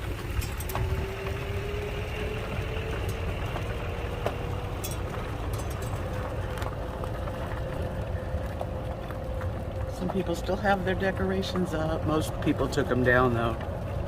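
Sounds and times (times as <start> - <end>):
sharp clicks and rattles: 0.0 - 14.0
thin rising whine: 0.0 - 14.0
vehicle rumbling on bumpy road: 0.0 - 14.0.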